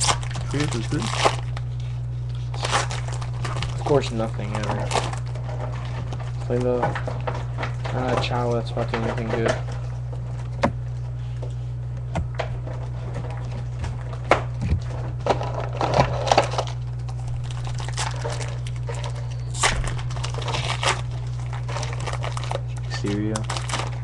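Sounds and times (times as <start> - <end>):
trading cards handled: 0.0 - 5.3
foil wrapper tearing and crinkling: 0.0 - 9.6, 15.0 - 24.0
low electrical hum: 0.0 - 24.0.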